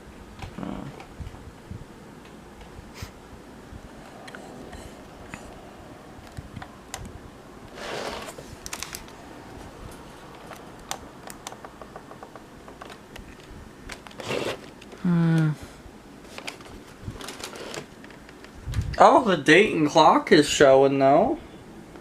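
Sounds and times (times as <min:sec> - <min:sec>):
handling rustle: 0:16.2 - 0:18.8.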